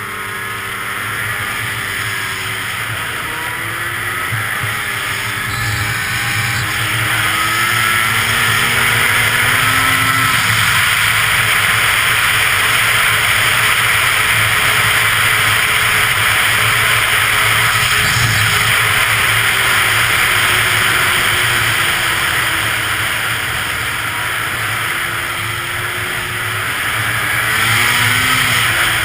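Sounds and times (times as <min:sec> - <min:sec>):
snowmobile engine accelerating: 0:00.0 - 0:29.0.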